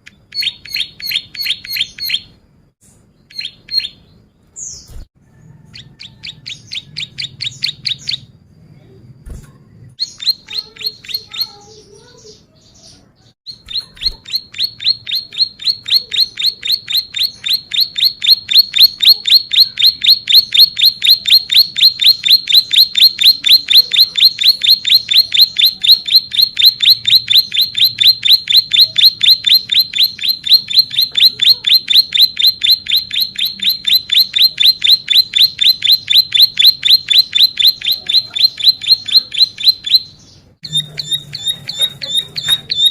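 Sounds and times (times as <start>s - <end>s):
bird singing sharp chirps: 10.0s - 42.9s.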